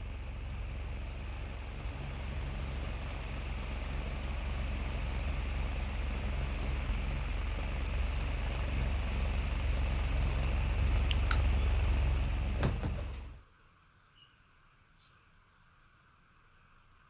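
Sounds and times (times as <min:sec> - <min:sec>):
ceiling fan motor hum: 0:00.0 - 0:14.1
sharp clicks: 0:11.1 - 0:11.6.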